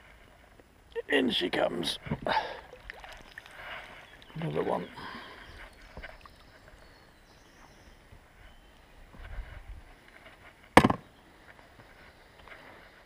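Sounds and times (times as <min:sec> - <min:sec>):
sharp knock: 0:10.8 - 0:11.0.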